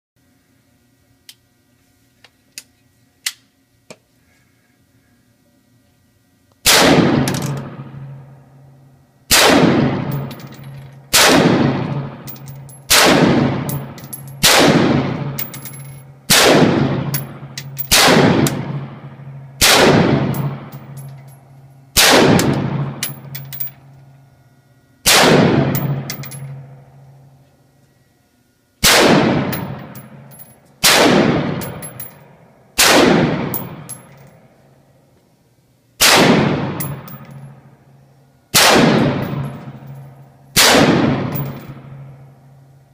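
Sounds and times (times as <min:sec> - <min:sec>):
gunshots with long echo: 0:06.7 - 0:08.0, 0:09.3 - 0:10.4, 0:11.1 - 0:12.3, 0:12.9 - 0:15.4, 0:16.3 - 0:20.7, 0:22.0 - 0:23.0, 0:25.1 - 0:26.1, 0:28.8 - 0:30.0, 0:30.8 - 0:31.8, 0:32.8 - 0:33.9, 0:36.0 - 0:37.2, 0:38.6 - 0:39.5, 0:40.6 - 0:42.0.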